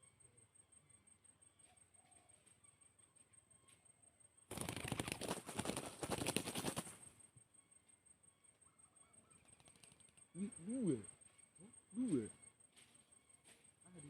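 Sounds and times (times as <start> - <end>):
dove wings flapping: 4.5 - 7.1, 9.4 - 10.2.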